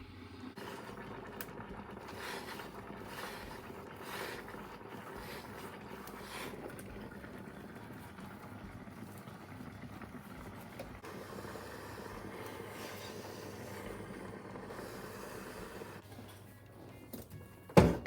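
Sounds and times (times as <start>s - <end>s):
steamer hissing: 0.4s - 16.1s.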